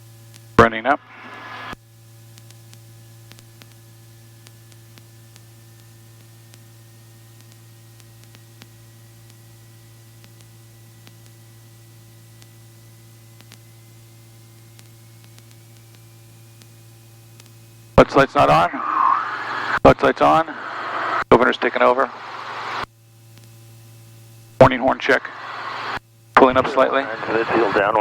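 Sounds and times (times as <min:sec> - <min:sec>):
engine whine rising in pitch: 0:01.0 - 0:01.8, 0:18.0 - 0:22.9, 0:24.7 - 0:28.0
helicopter hum and hiss: 0:01.0 - 0:01.8, 0:18.0 - 0:22.8, 0:24.6 - 0:28.0.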